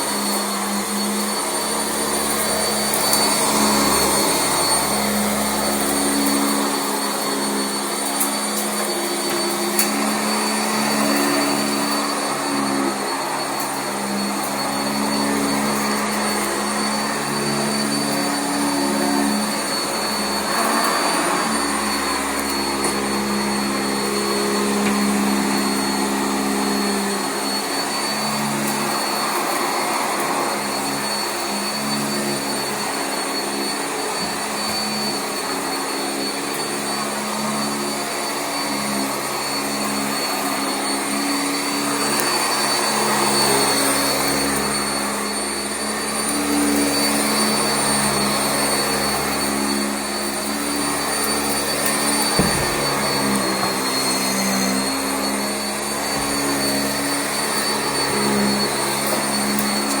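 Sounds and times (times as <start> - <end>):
upright vacuum motor whine: 0.0 - 60.0
short thump: 52.4 - 52.8.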